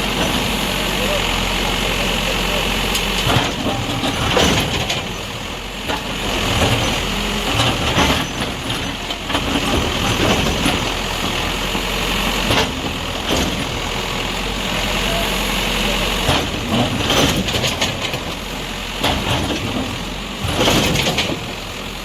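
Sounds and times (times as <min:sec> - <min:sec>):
heavy machine diesel engine: 0:00.0 - 0:22.0
knocks and clanks: 0:02.9 - 0:05.3, 0:16.2 - 0:18.4, 0:19.0 - 0:21.6.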